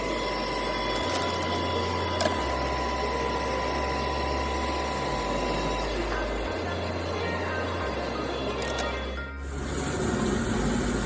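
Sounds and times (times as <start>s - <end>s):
milling machine whine: 0.0s - 11.0s
noisy hiss: 9.4s - 11.0s.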